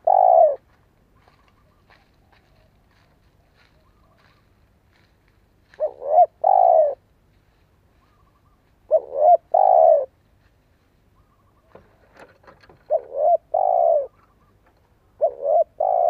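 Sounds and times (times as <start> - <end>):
dove cooing: 0.0 - 2.7, 5.7 - 7.0, 8.0 - 10.2, 11.2 - 16.0
small birds twittering: 1.2 - 4.7, 5.7 - 7.0, 7.9 - 10.1, 12.8 - 16.0.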